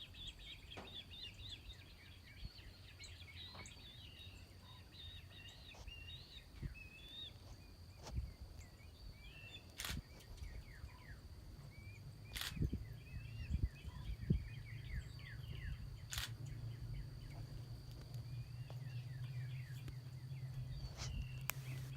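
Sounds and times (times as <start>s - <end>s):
small birds chirping: 0.0s - 21.9s
sharp clicks: 9.7s - 10.4s, 12.3s - 12.7s, 16.1s - 16.5s
low hum: 9.8s - 21.9s.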